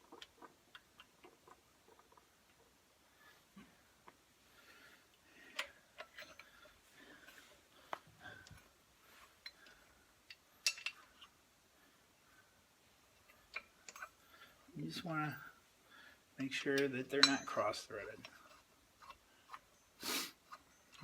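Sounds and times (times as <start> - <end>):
lug nuts clinking on metal: 5.5 - 7.3, 10.3 - 11.3, 16.4 - 19.9.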